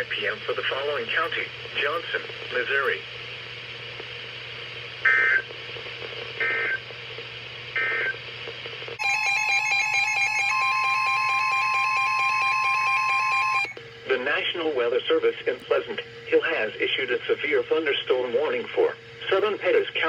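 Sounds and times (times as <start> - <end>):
loud steady alert tone: 9.0 - 13.8.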